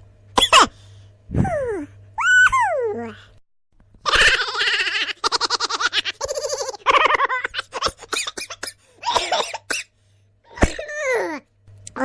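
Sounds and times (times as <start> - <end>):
cackling laughter: 4.0 - 8.6.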